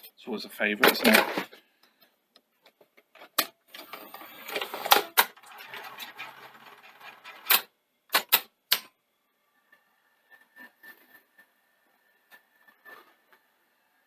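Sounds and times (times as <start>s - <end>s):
plastic cassette clicks and clunks: 2.6s - 8.9s.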